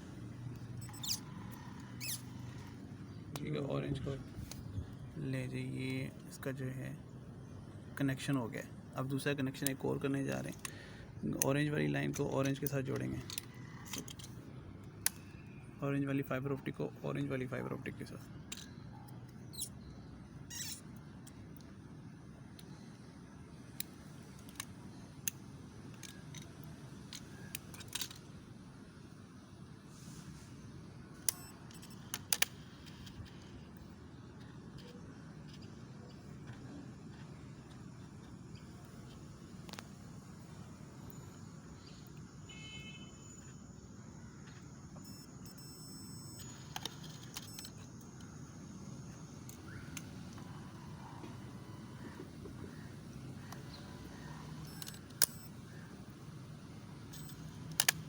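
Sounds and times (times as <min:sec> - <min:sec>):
steady low hum: 0:00.0 - 0:58.0
faint high electronic tones: 0:40.4 - 0:50.8, 0:53.7 - 0:55.9.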